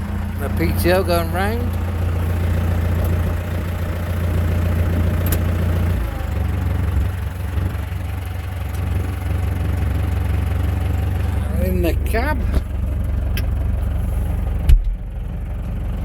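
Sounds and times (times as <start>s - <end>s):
tractor diesel engine running: 0.0s - 16.0s.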